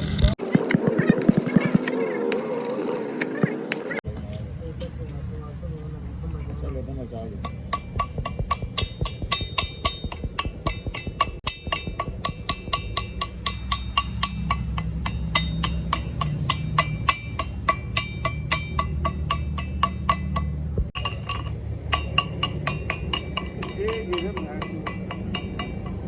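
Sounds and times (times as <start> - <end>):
hammer striking steel: 7.3 - 26.0.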